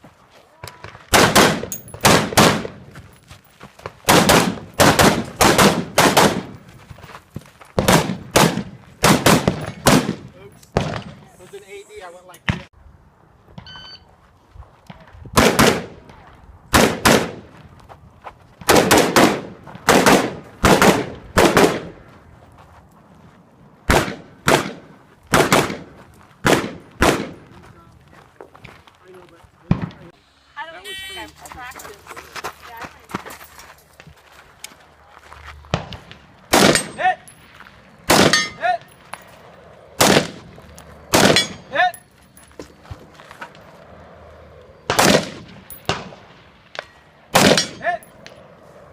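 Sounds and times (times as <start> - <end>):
pistol shots: 1.1 - 2.8, 4.0 - 6.6, 7.8 - 11.2, 15.4 - 16.0, 16.7 - 17.4, 18.6 - 21.9, 23.9 - 27.4, 35.8 - 37.0, 38.1 - 39.0, 40.0 - 40.5, 41.1 - 41.7, 44.9 - 46.2, 47.3 - 48.0
short metallic ring: 13.6 - 14.1
shot timer beep: 13.6 - 14.1.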